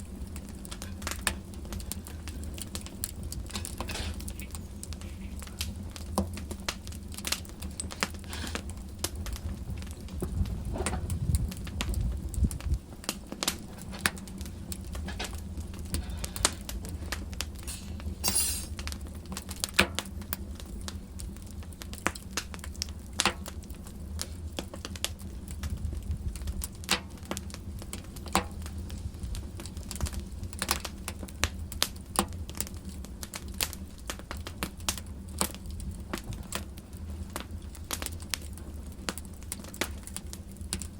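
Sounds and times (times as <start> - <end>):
low rumble of flames: 0.0 - 40.9
wood fire crackling and popping: 0.0 - 40.9
short hiss: 17.6 - 18.8.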